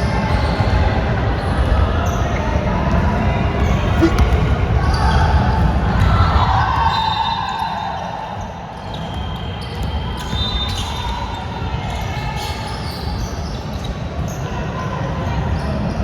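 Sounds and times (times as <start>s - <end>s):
basketball bouncing on court: 4.0s - 4.6s.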